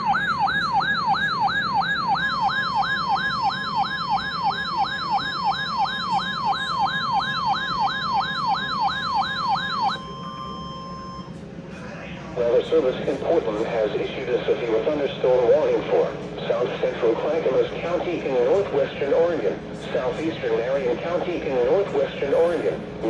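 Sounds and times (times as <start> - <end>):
electronic warbling siren: 0.0 - 11.4
steady alarm tone: 0.0 - 11.8, 12.4 - 23.0.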